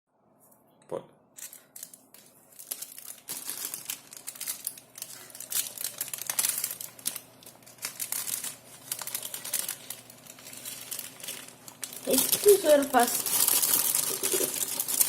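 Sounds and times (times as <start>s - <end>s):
packaging crinkling and rustling: 1.4s - 15.0s.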